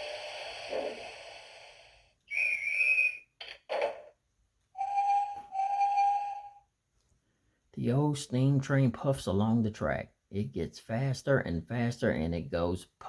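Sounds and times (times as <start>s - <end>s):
steam train puffing hiss: 0.0s - 2.2s
guard's whistle: 2.3s - 3.4s.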